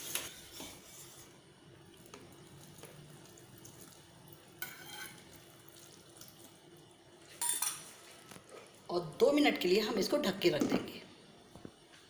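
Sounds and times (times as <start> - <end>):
hot liquid being poured: 1.8 - 8.9.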